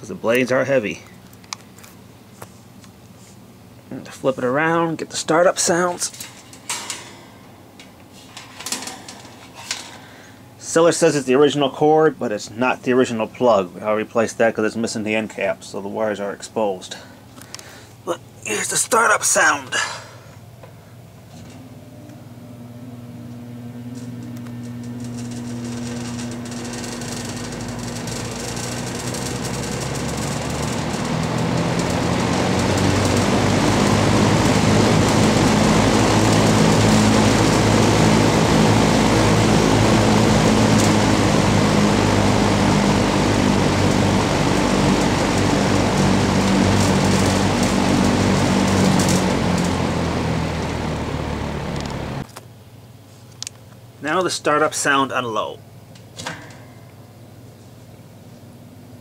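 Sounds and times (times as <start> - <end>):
box fan motor hum: 20.4 - 52.4
rush of air from fan blades: 25.0 - 52.2.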